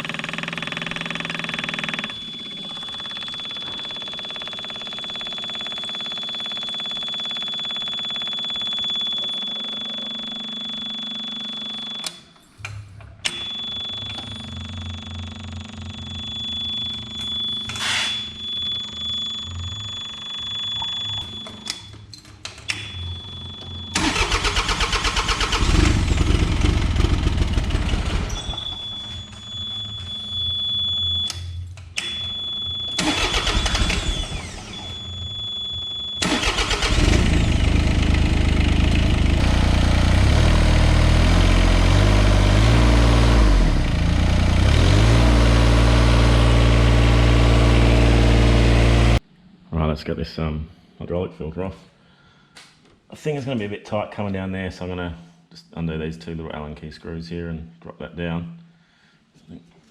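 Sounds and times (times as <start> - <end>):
diesel engine cranking and running: 0.0 - 12.1, 23.9 - 29.7, 33.0 - 49.2
electric fuel pump humming: 0.0 - 12.1, 32.5 - 49.2
high warning tone: 0.5 - 12.3, 13.2 - 22.0.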